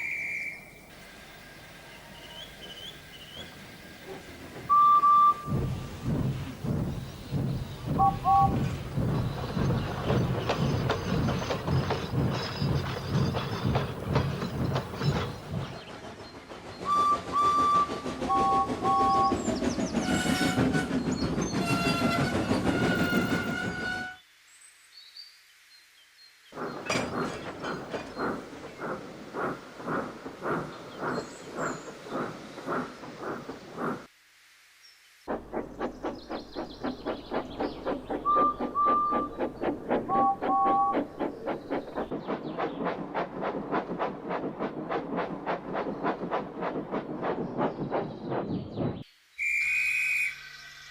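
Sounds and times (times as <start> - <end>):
hissing steam: 0.0 - 24.2, 26.6 - 34.3, 35.2 - 50.4
steam locomotive chuffing: 0.9 - 24.2, 26.6 - 34.1, 35.3 - 49.1
train whistle blasts: 16.9 - 19.3.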